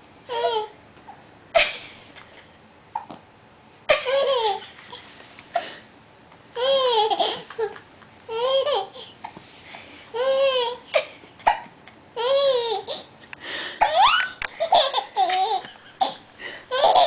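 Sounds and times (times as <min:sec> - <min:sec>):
baby laughing: 0:00.3 - 0:00.8, 0:03.9 - 0:05.1, 0:06.6 - 0:09.2, 0:10.2 - 0:13.1, 0:13.8 - 0:17.0.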